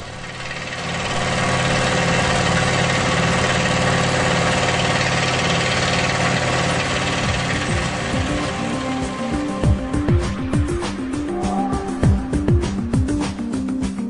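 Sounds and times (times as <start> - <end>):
milling machine cutting metal: 0.0 - 9.6
music: 0.0 - 14.0.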